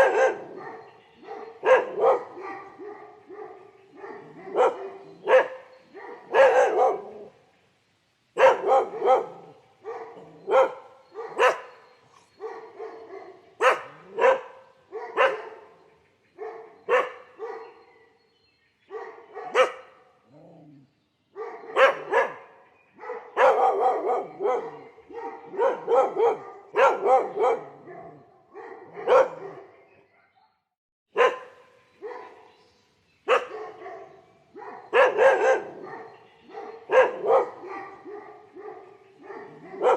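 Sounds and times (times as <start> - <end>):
dog barking: 0.0 - 7.4, 8.4 - 15.8, 16.4 - 18.2, 18.9 - 20.0, 21.3 - 32.5, 33.2 - 39.9.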